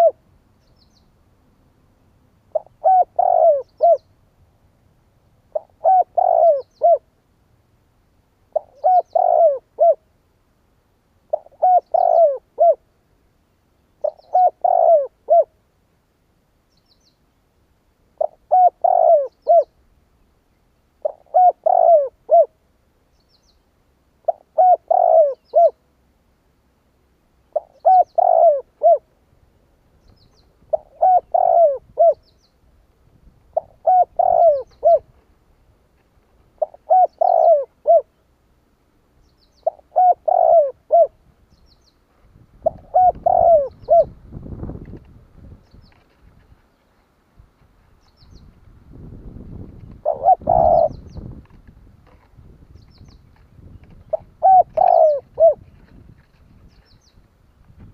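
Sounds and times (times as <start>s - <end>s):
dove cooing: 0.0s - 0.2s, 2.5s - 4.1s, 5.5s - 7.1s, 8.5s - 10.1s, 11.3s - 12.9s, 14.0s - 15.6s, 18.2s - 19.8s, 21.0s - 22.6s, 24.2s - 25.8s, 27.5s - 29.1s, 30.7s - 32.3s, 33.5s - 35.1s, 36.6s - 38.2s, 39.6s - 41.2s, 42.6s - 44.2s, 49.9s - 51.4s, 54.0s - 56.3s.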